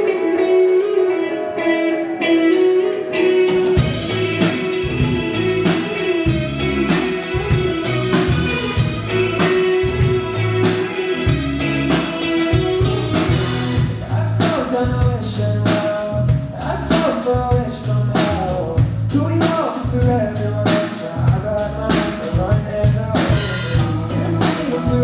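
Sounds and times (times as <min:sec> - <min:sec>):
electric guitar ringing line: 0:00.0 - 0:14.0
drums and bass beat: 0:03.5 - 0:25.0.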